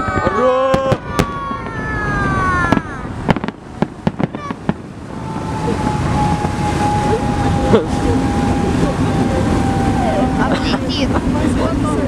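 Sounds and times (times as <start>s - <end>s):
fireworks bangs and crackling: 0.0s - 9.5s.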